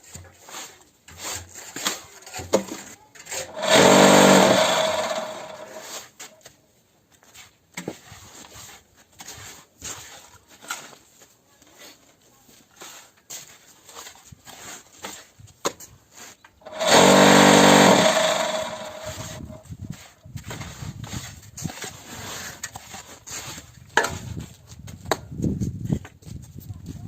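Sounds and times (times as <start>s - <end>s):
vibrator motor humming: 3.5s - 5.9s, 16.7s - 19.6s.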